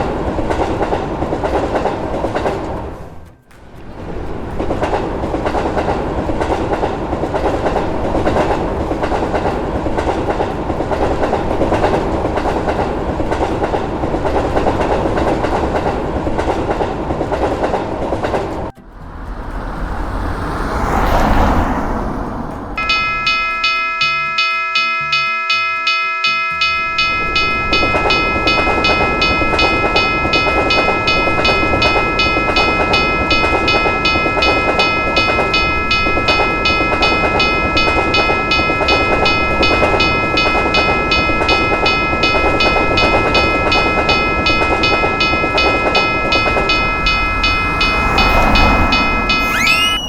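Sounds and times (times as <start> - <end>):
passing train rumble: 0.0 - 50.0
railroad crossing bell ringing: 4.8 - 17.0, 22.8 - 50.0.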